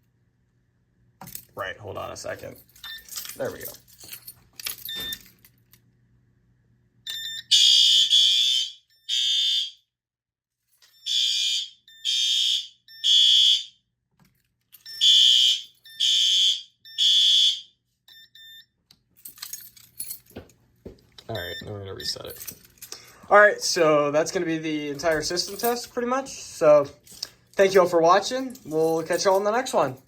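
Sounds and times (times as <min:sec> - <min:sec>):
fire alarm horn blasts: 0:07.1 - 0:09.9, 0:11.0 - 0:13.9, 0:14.9 - 0:18.6.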